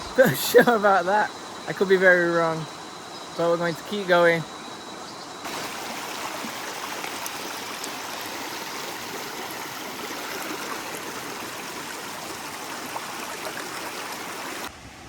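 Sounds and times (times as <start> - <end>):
stream rushing over rocks: 5.5 - 14.7.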